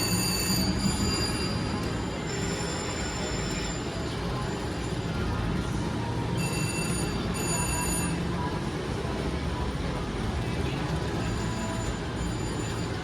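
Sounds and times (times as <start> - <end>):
slot machine electronic chimes: 0.0 - 5.5, 6.3 - 8.4, 11.1 - 13.0.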